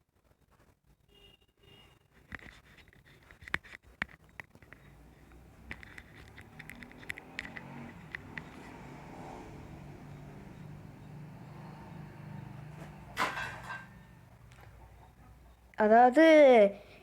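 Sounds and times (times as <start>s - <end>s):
smartphone handling taps and scratches: 2.2s - 8.8s
sharp ticks: 4.1s - 8.9s.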